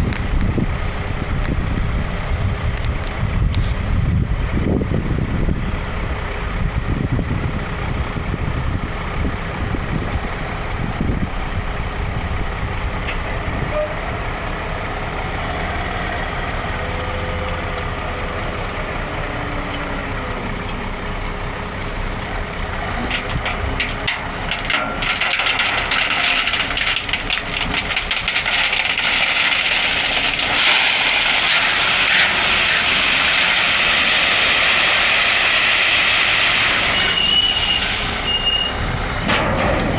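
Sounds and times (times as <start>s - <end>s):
low engine rumble: 0.0s - 39.9s
loud hiss with crackling: 26.5s - 38.7s.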